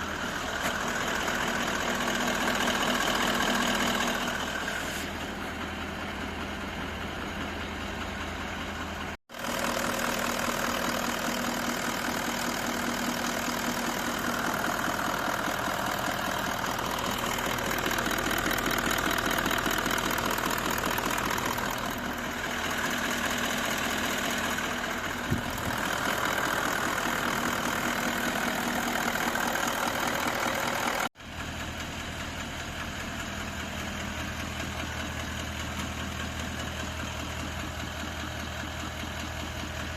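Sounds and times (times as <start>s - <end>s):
diesel engine idling: 0.0s - 39.9s
engine knock: 0.0s - 39.9s.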